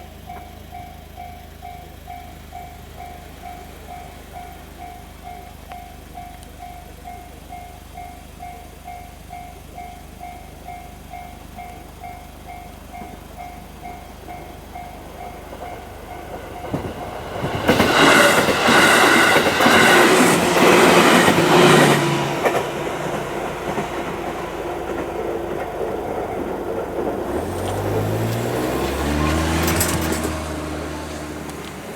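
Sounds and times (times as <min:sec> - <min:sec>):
level-crossing bell dinging: 0:00.0 - 0:25.6
train wheels clattering on rails: 0:00.2 - 0:31.9
train motor rising in pitch: 0:11.6 - 0:31.9.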